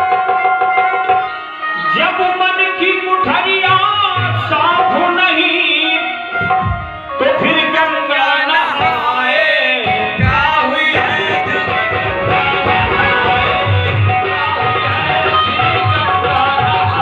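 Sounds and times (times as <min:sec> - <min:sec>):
tabla: 0:00.0 - 0:17.0
person singing ornamented melody: 0:07.2 - 0:13.6.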